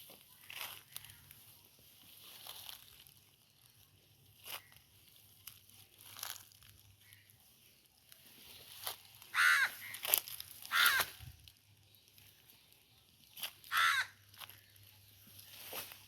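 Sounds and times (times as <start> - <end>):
crow cawing: 9.3 - 11.2, 13.7 - 14.2.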